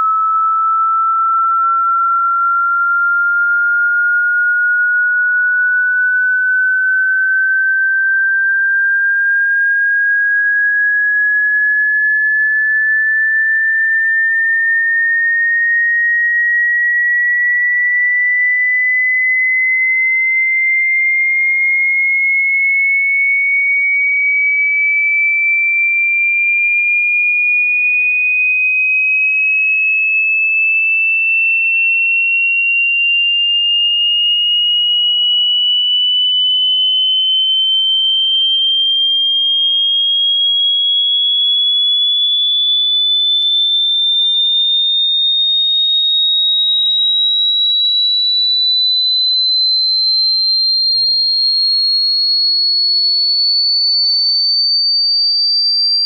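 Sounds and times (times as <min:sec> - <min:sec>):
sine tone gliding upward: 0:00.0 - 0:19.5, 0:34.2 - 0:56.0.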